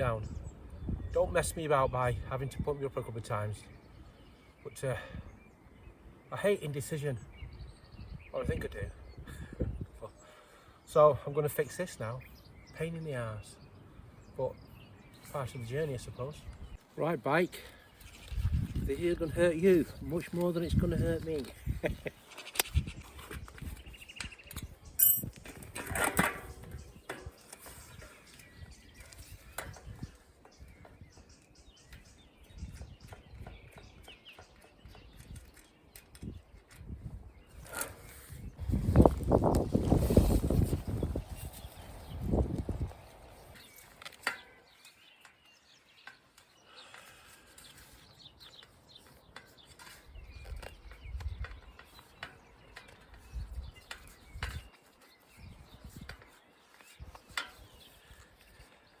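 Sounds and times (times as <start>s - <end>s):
wind rumbling on microphone: 0.0s - 2.7s, 7.2s - 10.1s, 18.0s - 43.8s, 50.1s - 58.2s
bird chirps: 26.5s - 38.7s, 40.8s - 59.0s.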